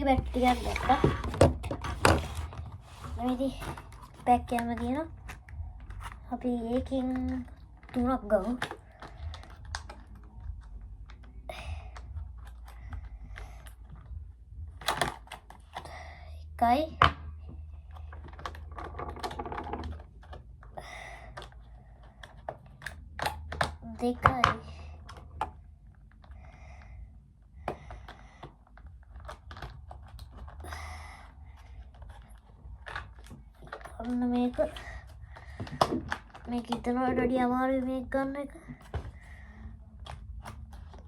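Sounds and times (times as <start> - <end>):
plastic packaging rustling: 0.0 - 11.4
plastic packaging clicks and scrapes: 0.0 - 16.1, 17.0 - 26.8, 27.6 - 41.0.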